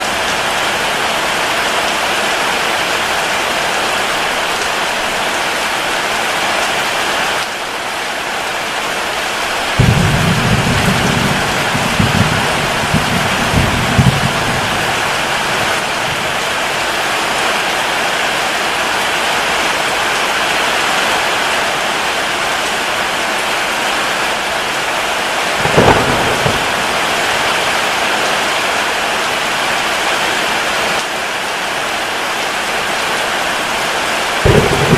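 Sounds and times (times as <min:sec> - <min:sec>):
heavy rain falling: 0:00.0 - 0:34.9
thunder rumbling: 0:09.6 - 0:16.9, 0:25.5 - 0:28.4, 0:34.4 - 0:34.9
sharp thunderclap: 0:09.7 - 0:16.4, 0:25.6 - 0:28.0, 0:34.4 - 0:34.9.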